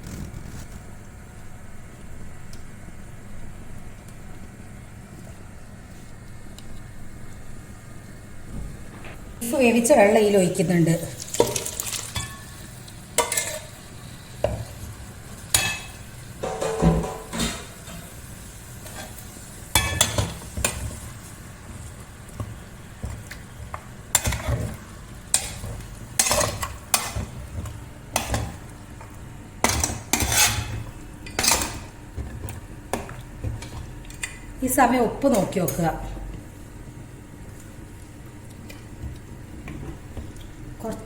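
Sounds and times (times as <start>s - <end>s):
low sizzle: 0.0s - 41.0s
spoon scraping a pan: 13.2s - 13.8s, 15.5s - 18.1s, 29.6s - 31.8s.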